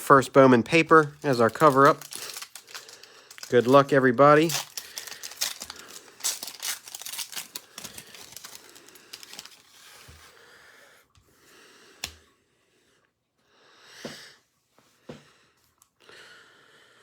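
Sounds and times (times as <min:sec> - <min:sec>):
packaging crinkling and clicking: 0:00.7 - 0:09.8.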